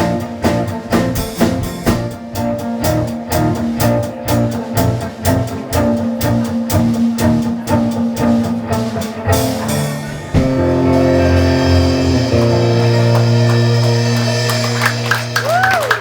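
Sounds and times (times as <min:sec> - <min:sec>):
live rock band playing: 0:00.0 - 0:16.0
final chord ringing: 0:10.0 - 0:15.4.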